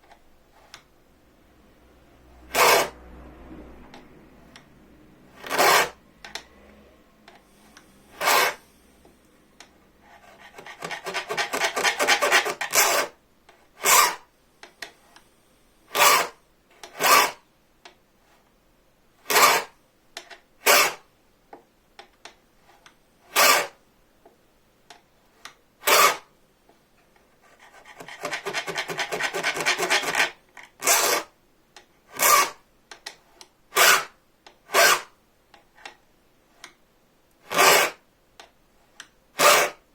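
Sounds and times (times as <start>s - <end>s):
hand file rasping on saw blade: 2.5s - 3.0s, 5.4s - 6.0s, 7.9s - 8.7s, 10.1s - 13.2s, 13.8s - 14.2s, 15.9s - 16.4s, 17.0s - 17.4s, 19.3s - 19.7s, 20.7s - 21.0s, 23.3s - 23.8s, 25.8s - 26.3s, 27.5s - 31.3s, 32.2s - 32.6s, 33.8s - 35.1s, 37.5s - 38.0s, 39.4s - 39.8s.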